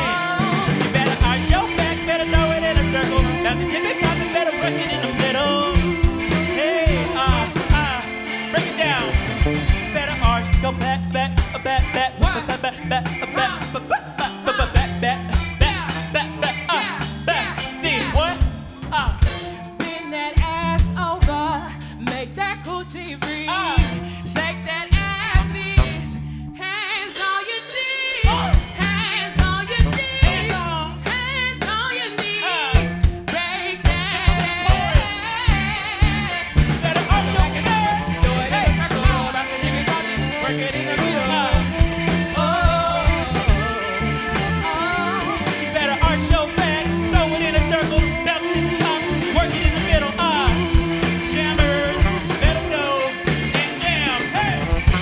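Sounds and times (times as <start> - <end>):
wavering lead melody: 0.0 - 11.8, 34.3 - 55.0
drum kit: 0.0 - 26.3, 26.9 - 55.0
bass: 0.0 - 55.0
live band playing: 0.0 - 55.0.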